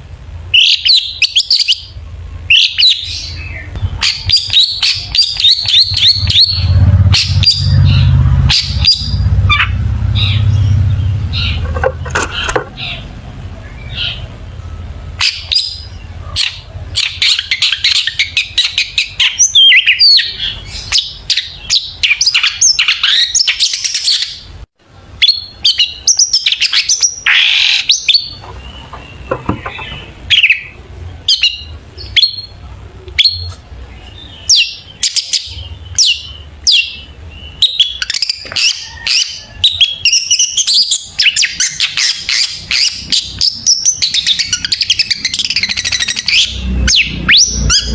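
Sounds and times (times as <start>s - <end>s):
bird singing chirps and trills: 0.5s - 24.5s, 25.2s - 47.9s.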